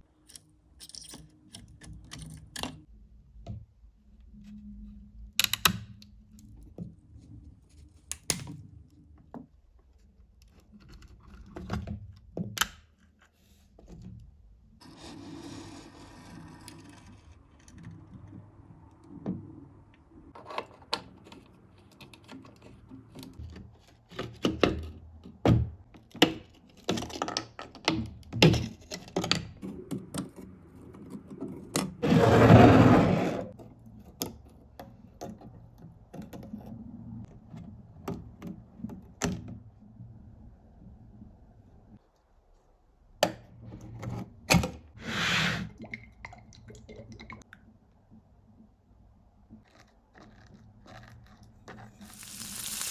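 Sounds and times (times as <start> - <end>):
small tools clicking and tapping: 0.0 - 2.9
soft hissing: 52.0 - 52.9.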